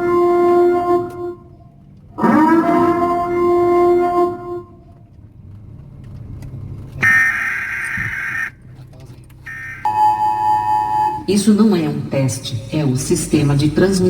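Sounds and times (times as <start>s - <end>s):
engine and road hum: 0.0s - 14.0s
two-tone attention signal: 9.8s - 11.3s.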